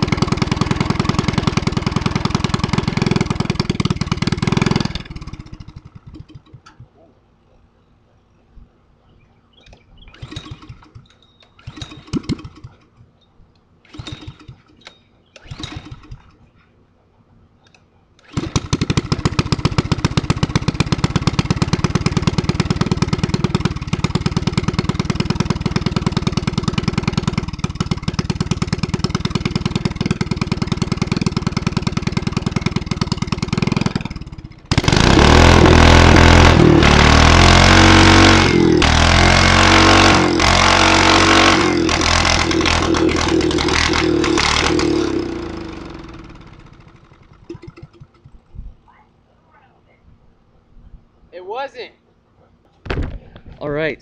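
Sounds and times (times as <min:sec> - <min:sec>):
go-kart engine running: 0:00.0 - 0:06.8, 0:13.8 - 0:16.4, 0:18.2 - 0:48.5.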